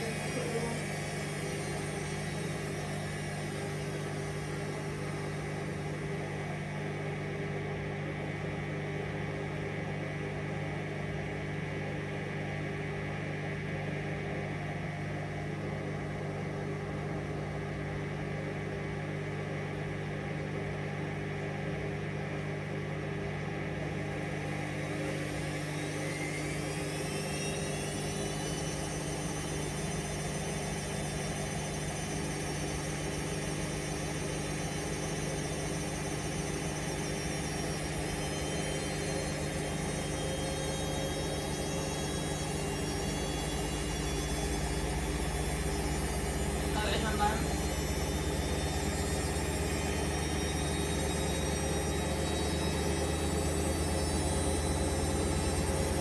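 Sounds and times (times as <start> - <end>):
washing machine motor whine: 0.0 - 56.0.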